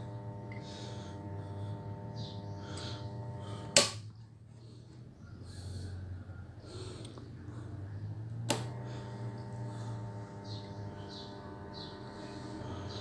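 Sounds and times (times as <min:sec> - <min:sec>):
welder transformers humming: 0:00.0 - 0:13.0.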